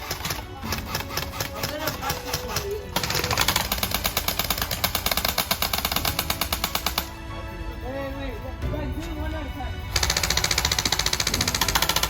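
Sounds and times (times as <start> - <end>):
bb gun rapid automatic fire: 0.0 - 7.2, 10.0 - 12.0.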